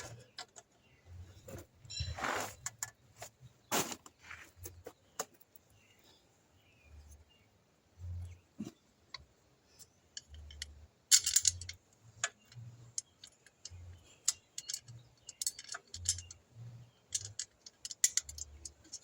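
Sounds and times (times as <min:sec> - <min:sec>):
parts rattling: 0:08.0 - 0:19.0
metallic clicks of tools: 0:09.8 - 0:19.0.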